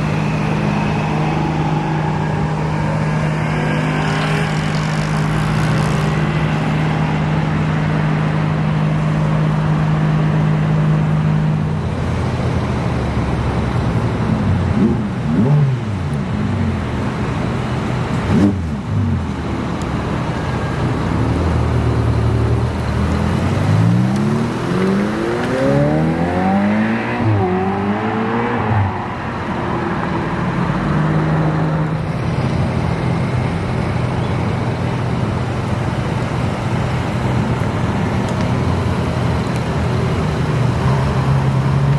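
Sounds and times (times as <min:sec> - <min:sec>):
engine revving: 0:14.5 - 0:16.0, 0:21.8 - 0:29.0
car accelerating through gears: 0:23.0 - 0:29.0.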